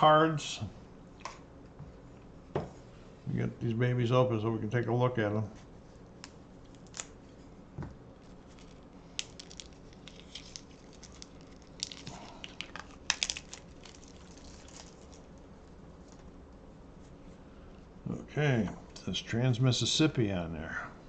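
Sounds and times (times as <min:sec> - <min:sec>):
cards clicking and crinkling: 0:06.2 - 0:07.2, 0:08.2 - 0:15.3.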